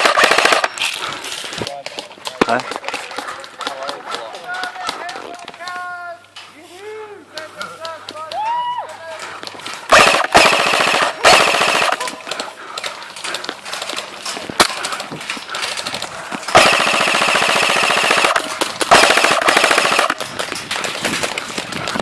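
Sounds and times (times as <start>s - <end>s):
airsoft guns firing bursts: 0.0s - 1.0s, 9.9s - 21.5s
airsoft gun single shots: 9.9s - 12.0s.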